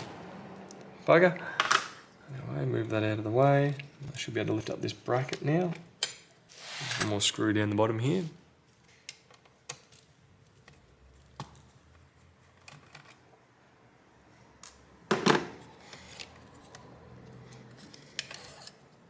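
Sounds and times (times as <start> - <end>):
screwdriver and laptop parts clicking: 14.6 - 18.8.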